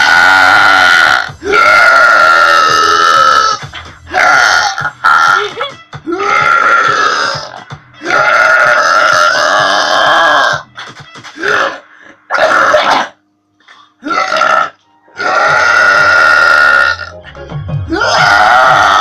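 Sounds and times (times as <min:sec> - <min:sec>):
woman burping loudly: 0:02.1 - 0:05.4, 0:06.4 - 0:10.6, 0:11.5 - 0:13.2, 0:14.0 - 0:17.2.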